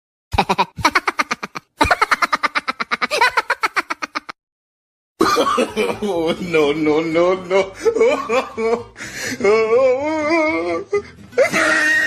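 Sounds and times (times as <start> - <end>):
stuttering laugh sound effect: 0.3 - 4.4, 11.4 - 12.0.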